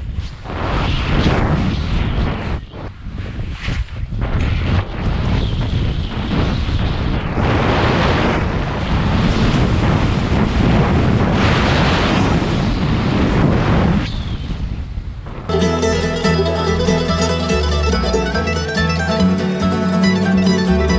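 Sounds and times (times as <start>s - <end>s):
wind buffeting microphone: 0.0s - 15.5s.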